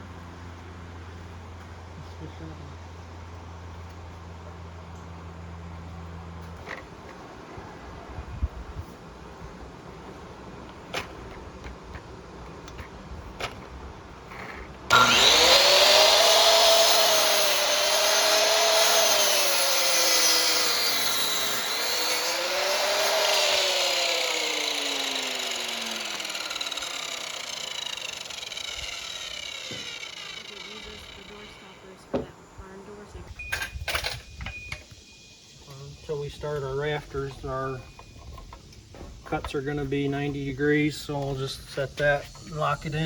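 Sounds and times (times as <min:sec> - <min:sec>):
electric saw cutting wood: 0:14.9 - 0:32.0.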